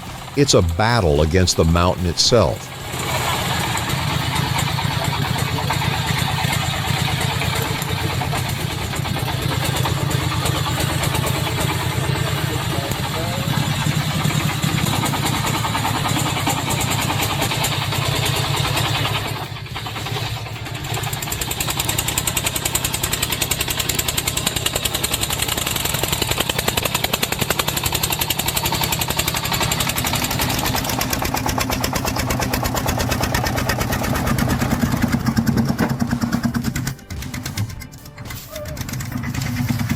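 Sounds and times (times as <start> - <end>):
engine running with fast pulsing: 0.0 - 39.9.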